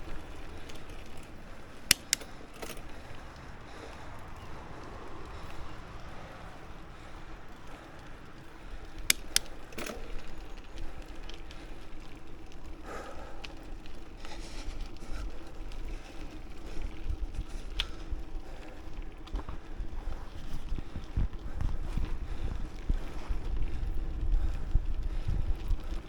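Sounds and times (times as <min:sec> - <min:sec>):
bicycle clicks and rattles: 0:00.0 - 0:26.0
bicycle tyres on pavement: 0:00.0 - 0:26.0
wind rumble on microphone: 0:13.7 - 0:26.0.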